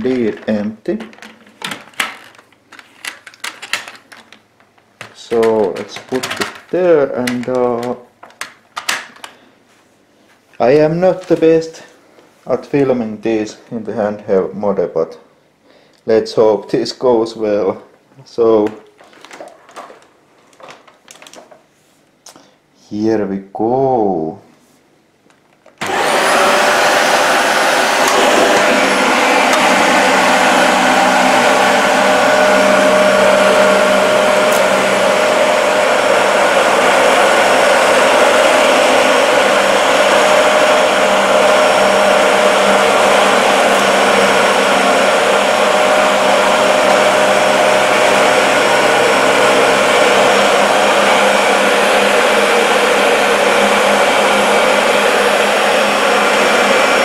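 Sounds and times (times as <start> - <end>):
upright vacuum cleaner running: 5.0 - 8.0, 25.8 - 57.0.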